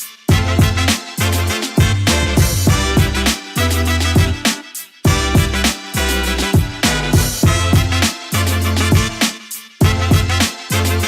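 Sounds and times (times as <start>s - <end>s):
sustained synth chords: 0.3s - 4.4s, 5.1s - 9.2s
bass line: 0.3s - 9.2s, 9.8s - 11.0s
punchy drum hits: 1.8s - 3.3s, 5.1s - 5.7s.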